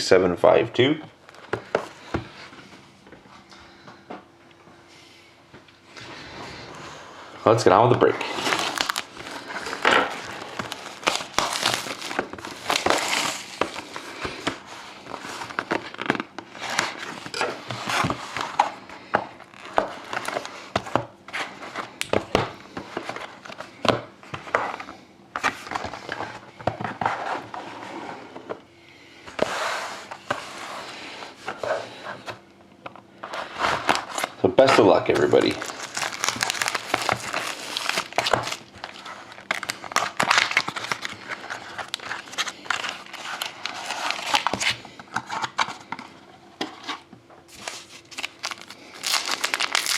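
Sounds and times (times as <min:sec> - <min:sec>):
plastic wrapping crinkling and tearing: 0:08.0 - 0:18.6, 0:33.4 - 0:45.6, 0:47.5 - 0:49.9.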